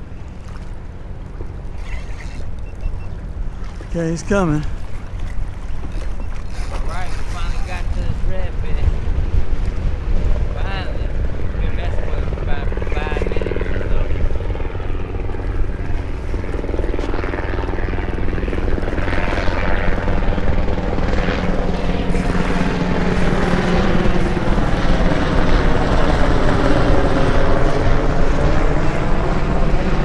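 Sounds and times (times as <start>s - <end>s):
wind buffeting microphone: 0.0s - 30.0s
motor drone: 11.2s - 30.0s.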